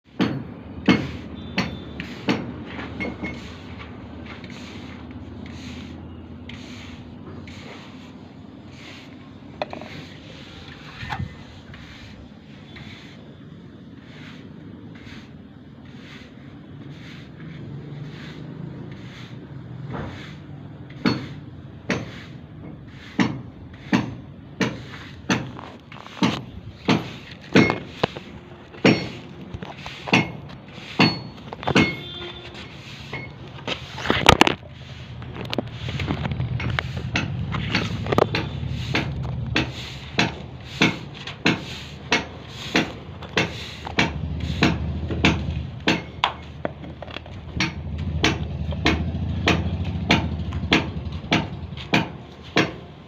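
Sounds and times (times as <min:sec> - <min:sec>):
hammer blows: 0:26.2 - 0:34.6.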